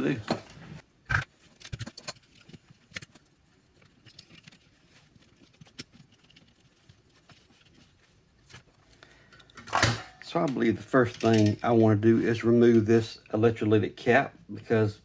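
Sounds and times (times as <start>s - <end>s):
small parts clicking and rustling: 1.4s - 12.0s.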